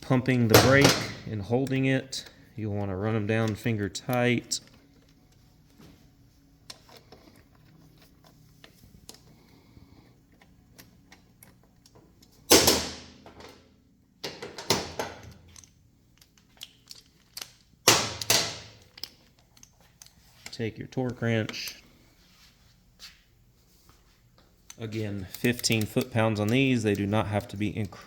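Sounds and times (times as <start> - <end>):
light tool clicks and ticks: 24.7 - 28.0.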